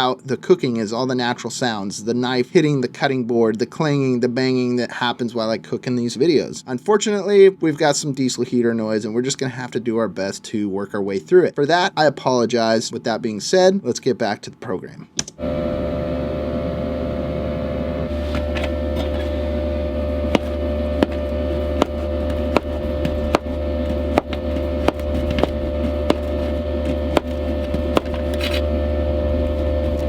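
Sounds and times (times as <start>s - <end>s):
diesel heater buzzing hum: 15.4s - 30.0s
knife chopping on cutting board: 20.3s - 28.7s.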